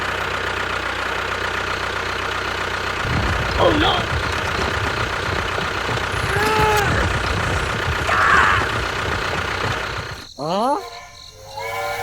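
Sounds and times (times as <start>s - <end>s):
engine running with low rumble: 0.0s - 10.3s.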